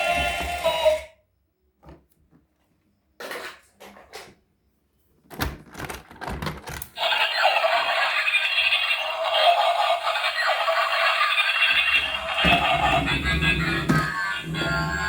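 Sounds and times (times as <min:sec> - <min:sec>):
handling clicks and rattles: 0:05.3 - 0:07.0.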